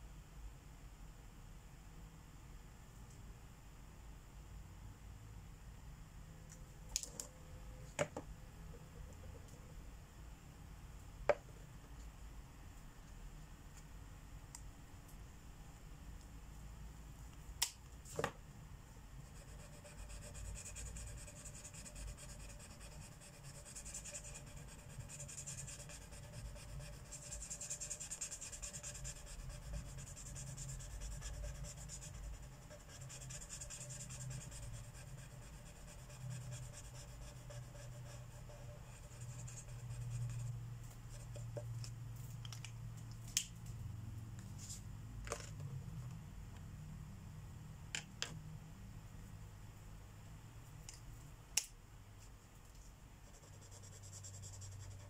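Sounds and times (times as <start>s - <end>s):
low steady hum: 0.0s - 55.0s
marker scratching on paper: 19.2s - 41.7s.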